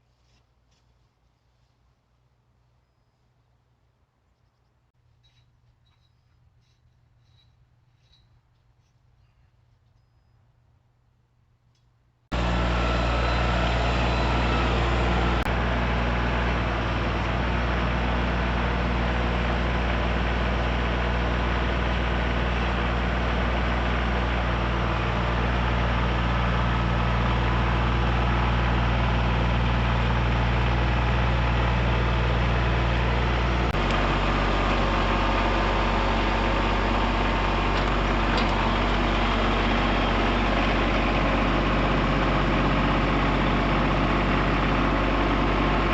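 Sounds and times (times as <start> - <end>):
engine running steadily: 12.3 - 45.9.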